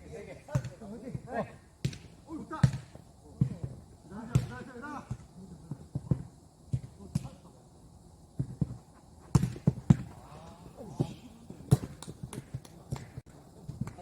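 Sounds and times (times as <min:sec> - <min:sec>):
ball bouncing and kicked: 0:01.8 - 0:05.3, 0:05.9 - 0:07.4, 0:08.4 - 0:10.2, 0:10.9 - 0:14.0.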